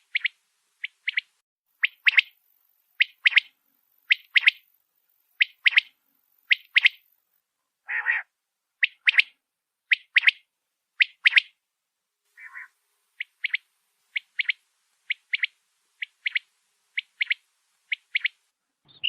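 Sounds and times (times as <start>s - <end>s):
quail calling: 0.1s - 2.3s, 5.4s - 5.9s, 7.9s - 10.4s, 11.0s - 11.5s, 12.4s - 18.4s
lower harsh bird call: 12.4s - 12.7s.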